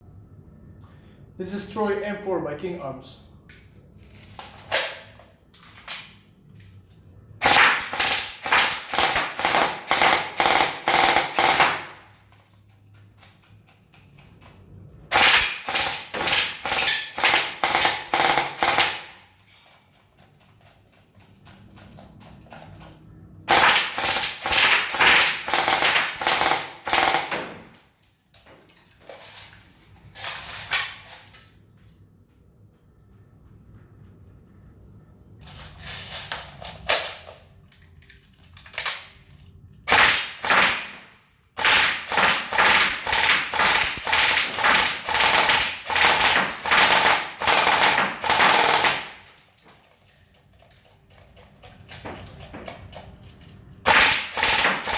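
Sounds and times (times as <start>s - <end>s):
airsoft gun rapid firing: 7.4s - 12.1s, 15.1s - 19.2s, 23.5s - 27.7s, 39.9s - 41.0s, 41.6s - 49.3s, 53.9s - 54.9s.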